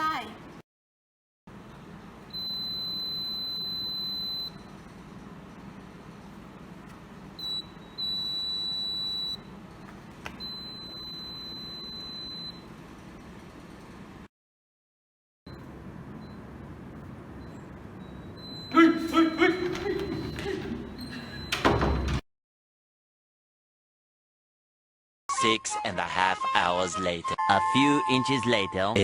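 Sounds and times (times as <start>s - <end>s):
high-pitched alarm buzzer beeping: 2.4s - 4.6s, 7.4s - 9.4s, 10.4s - 12.6s.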